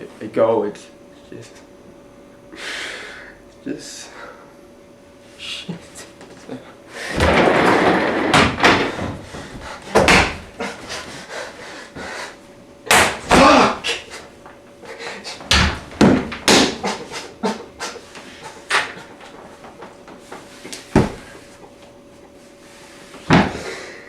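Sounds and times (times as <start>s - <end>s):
wooden knocks and bangs: 7.2s - 10.6s, 15.4s - 16.8s, 20.9s - 21.4s
person shouting a curse: 13.3s - 14.0s.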